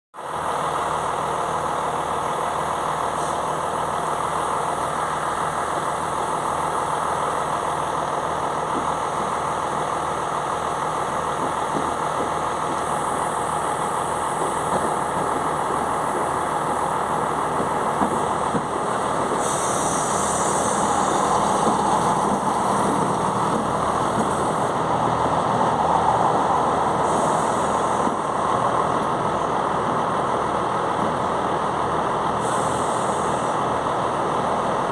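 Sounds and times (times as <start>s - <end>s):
train diesel engines running: 0.2s - 34.9s
brief hiss: 19.4s - 21.7s.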